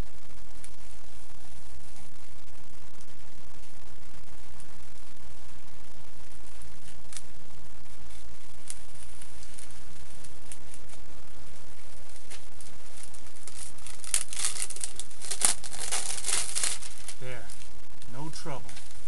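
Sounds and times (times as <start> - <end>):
packaging tearing and crinkling: 8.0 - 11.1, 12.0 - 17.7.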